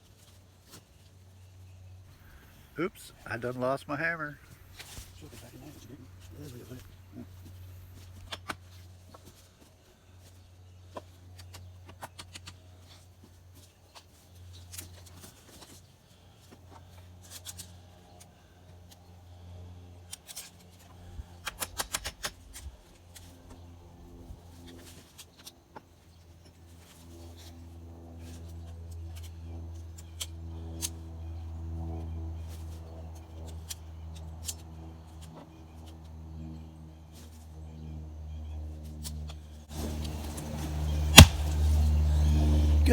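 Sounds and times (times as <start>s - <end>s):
low steady hum: 1.3s - 8.4s.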